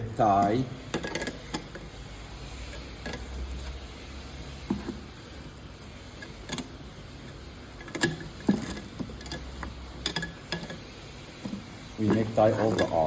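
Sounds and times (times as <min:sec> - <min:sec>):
light metal clicks and knocks: 0:07.3 - 0:13.0.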